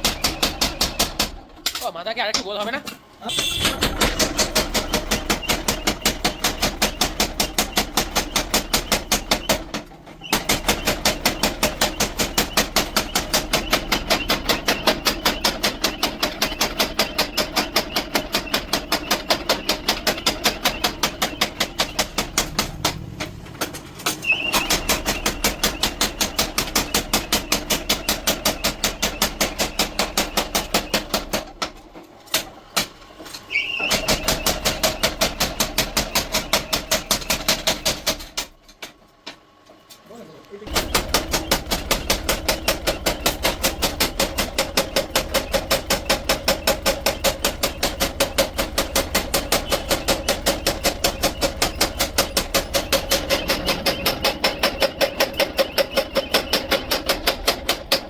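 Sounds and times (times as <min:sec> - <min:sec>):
hammer blows on steel: 0:03.2 - 0:06.8.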